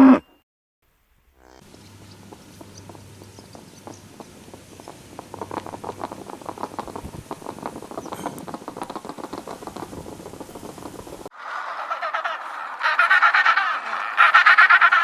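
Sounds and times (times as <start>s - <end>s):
small animal squeaking and clicking: 1.6s - 9.9s.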